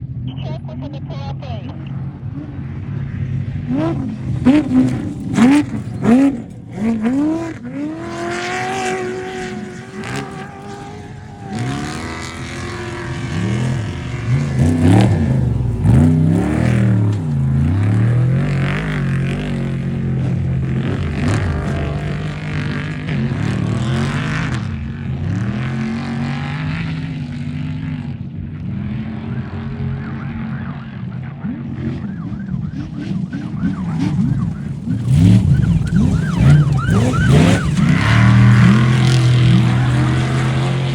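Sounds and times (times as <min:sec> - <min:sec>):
truck engines revving hard: 0:00.0 - 0:40.9.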